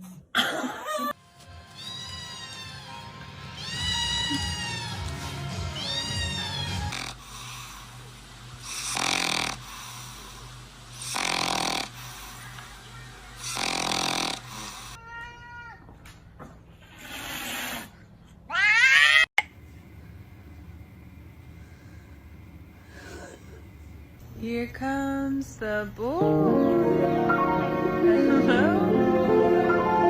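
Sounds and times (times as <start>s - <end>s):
cat meowing: 3.6s - 5.1s, 5.7s - 6.9s
cat snoring: 6.9s - 7.6s, 8.6s - 9.8s, 11.0s - 11.9s, 13.4s - 15.0s, 16.8s - 17.9s.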